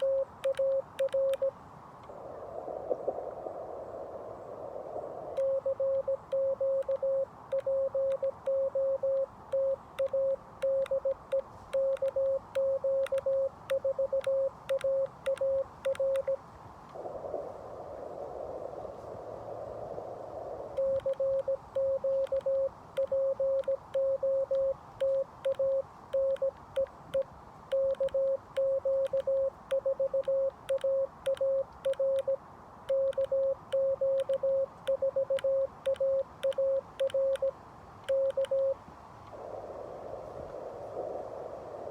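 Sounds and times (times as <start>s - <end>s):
morse code tone: 0.0s - 1.5s, 5.4s - 16.4s, 20.8s - 37.5s, 38.1s - 38.8s
receiver hiss: 0.0s - 41.9s.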